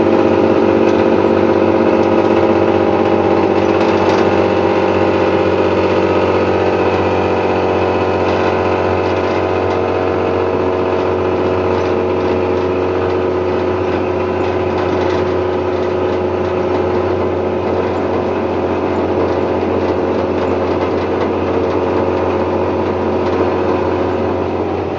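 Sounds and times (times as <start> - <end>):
bus diesel engine running: 0.0 - 24.9.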